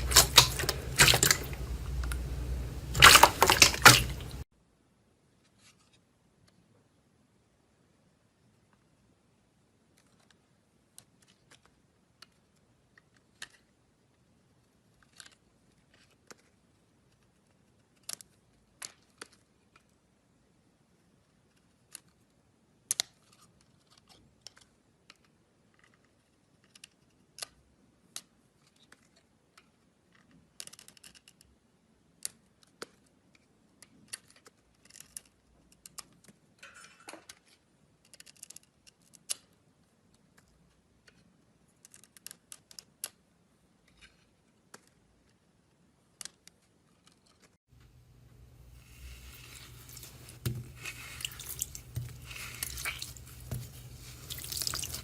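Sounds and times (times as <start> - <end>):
slime squishing: 0.0 - 4.4, 47.9 - 55.0.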